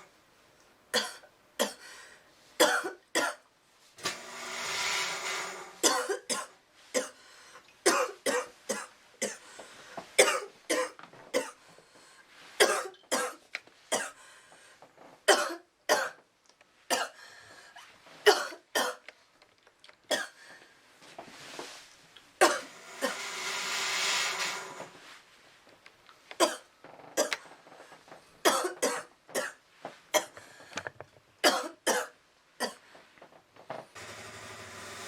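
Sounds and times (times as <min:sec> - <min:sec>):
woman coughing: 0:01.0 - 0:01.8, 0:02.6 - 0:03.4, 0:05.8 - 0:07.2, 0:07.9 - 0:09.4, 0:10.2 - 0:11.6, 0:12.6 - 0:14.2, 0:15.3 - 0:16.2, 0:18.3 - 0:19.0, 0:28.5 - 0:29.6, 0:31.4 - 0:32.8.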